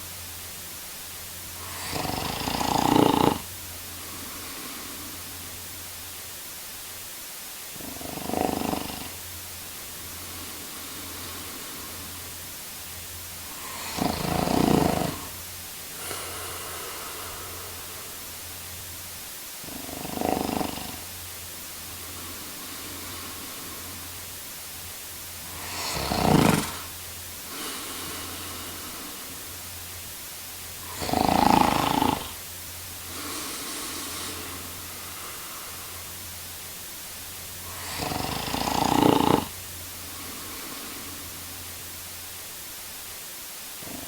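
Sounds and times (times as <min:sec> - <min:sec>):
steady background hiss: 0:00.0 - 0:44.0
soft breaths: 0:01.4 - 0:06.1, 0:07.2 - 0:44.0
man snoring: 0:01.6 - 0:05.6, 0:07.7 - 0:09.3, 0:10.0 - 0:12.4, 0:13.4 - 0:18.4, 0:19.6 - 0:21.2, 0:21.8 - 0:24.2, 0:25.4 - 0:29.6, 0:30.8 - 0:36.2, 0:37.6 - 0:41.6, 0:43.8 - 0:44.0.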